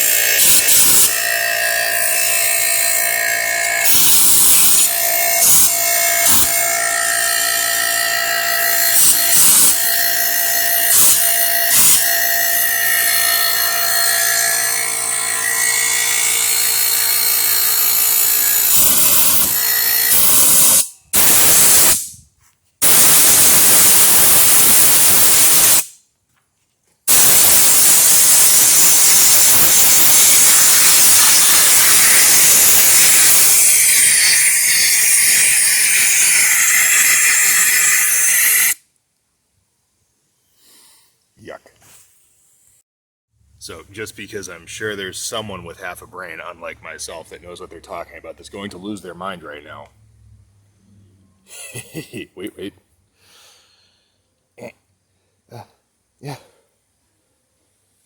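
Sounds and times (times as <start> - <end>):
steady mechanical whine: 0.0 - 20.2, 29.0 - 38.8
hissing blasts of air: 3.8 - 6.6, 10.9 - 12.1, 18.6 - 22.2, 22.8 - 26.0, 27.1 - 38.8.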